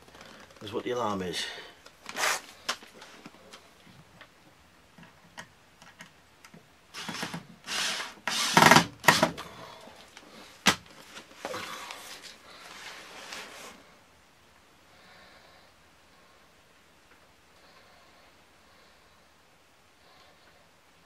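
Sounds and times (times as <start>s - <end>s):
screw scraping and rasping: 7.0s - 9.3s.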